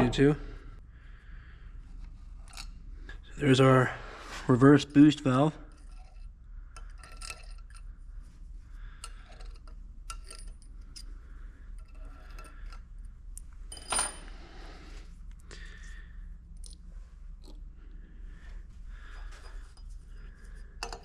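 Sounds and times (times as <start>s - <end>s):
small metal parts clinking: 5.7s - 7.9s, 8.9s - 14.4s, 16.6s - 16.8s, 19.0s - 21.0s.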